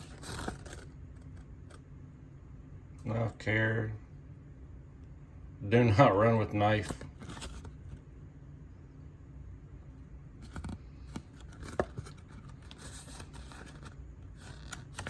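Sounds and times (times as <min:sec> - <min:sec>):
soft rustling and scraping: 0:10.4 - 0:15.0.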